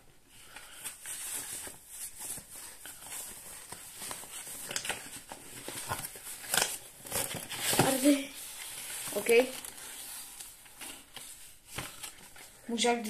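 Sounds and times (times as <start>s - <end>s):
packaging rustling: 0.4s - 12.6s.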